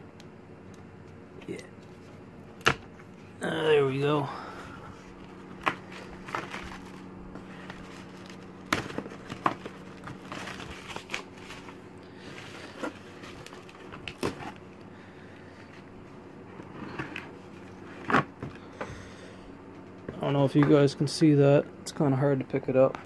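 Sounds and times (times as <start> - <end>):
faint steady hum: 0.0 - 23.0
packaging crinkling and rustling: 4.6 - 18.7.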